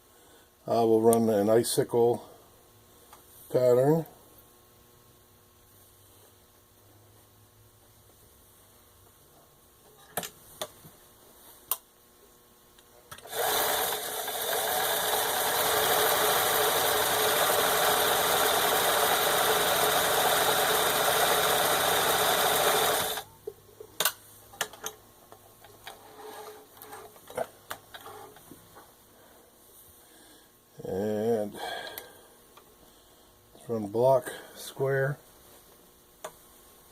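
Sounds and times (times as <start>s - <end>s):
sewing machine running: 13.2s - 23.3s.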